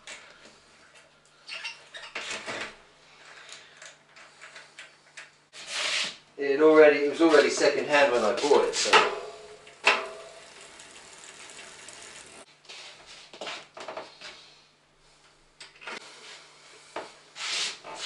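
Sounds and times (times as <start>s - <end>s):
bicycle knocks and clunks: 8.8s - 12.3s.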